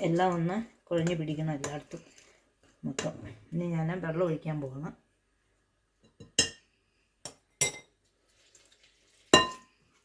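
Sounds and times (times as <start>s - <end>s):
utensils clinking on a mixing bowl: 0.0s - 3.3s, 7.2s - 9.9s.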